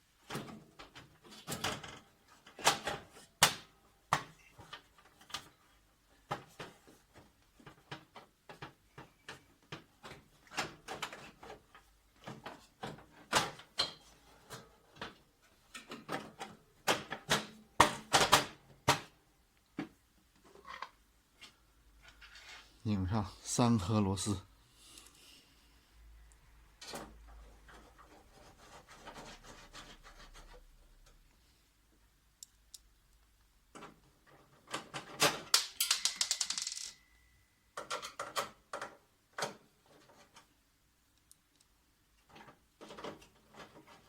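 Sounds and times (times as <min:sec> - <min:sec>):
plastic parts clicking and clattering: 0:00.2 - 0:19.2, 0:33.7 - 0:37.1, 0:37.8 - 0:40.5, 0:41.2 - 0:44.0.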